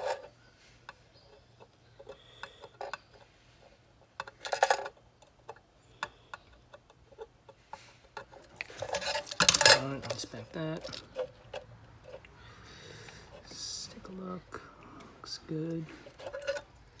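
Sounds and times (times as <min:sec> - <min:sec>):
metal clinks: 0:08.4 - 0:12.2.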